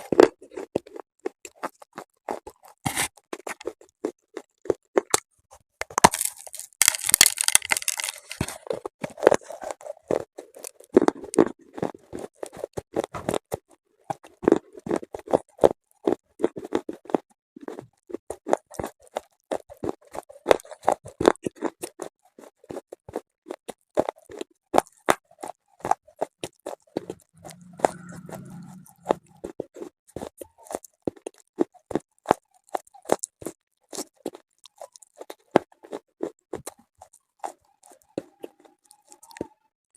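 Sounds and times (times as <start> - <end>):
crunching and chewing: 0.0 - 39.7
brief low hum: 27.0 - 29.5.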